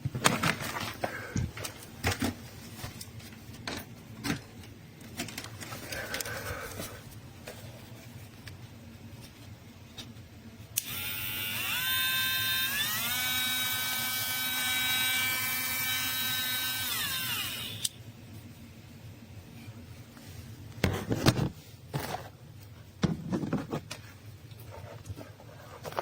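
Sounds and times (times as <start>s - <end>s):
engraver motor whine: 10.8s - 18.0s.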